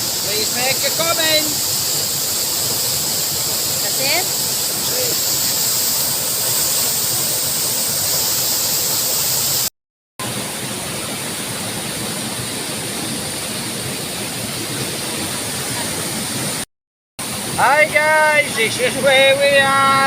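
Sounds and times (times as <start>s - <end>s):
waterfall rushing: 0.0s - 16.6s, 17.2s - 20.0s.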